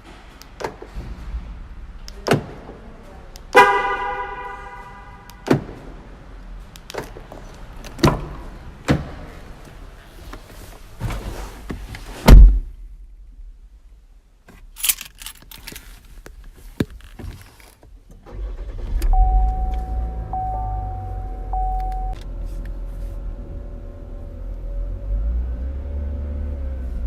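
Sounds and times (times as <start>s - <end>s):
rustling: 14.4s - 17.9s
car keys jangling: 14.7s - 16.1s
car engine starting and idling: 18.0s - 27.0s
car door shutting: 18.6s - 22.2s
thin steady tone: 19.2s - 22.2s.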